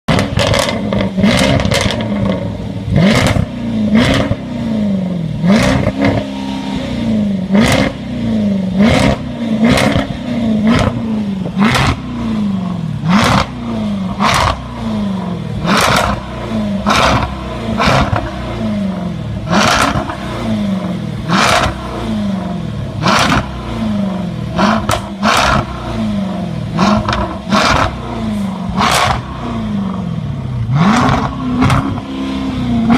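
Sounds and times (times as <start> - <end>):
exhaust crackles and pops: 0.1 - 2.4, 24.6 - 25.8, 26.8 - 28.0
car engine revving: 0.1 - 32.9.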